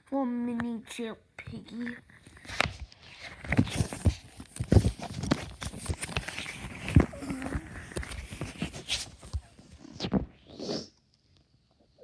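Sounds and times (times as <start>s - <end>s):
handling noise knocks and rustles: 2.4s - 9.8s.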